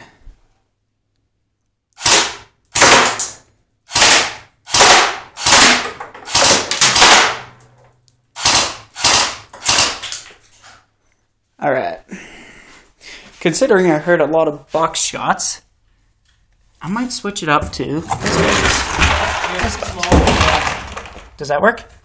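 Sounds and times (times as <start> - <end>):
airsoft gun shots: 2.0 - 7.6, 8.4 - 10.0.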